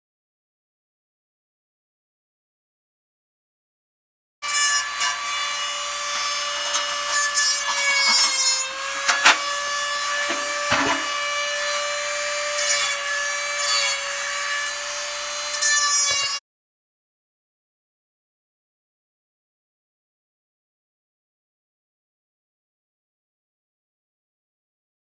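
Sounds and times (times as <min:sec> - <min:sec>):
power tool motor whining: 0:04.5 - 0:15.6
sharp knocks: 0:06.6 - 0:09.6, 0:10.2 - 0:11.3.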